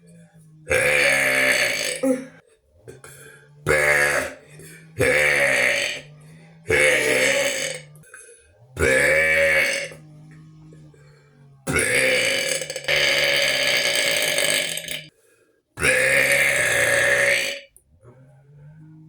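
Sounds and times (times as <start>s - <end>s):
person burping: 0.7s - 6.1s, 6.7s - 10.0s, 11.7s - 15.1s, 15.8s - 17.8s.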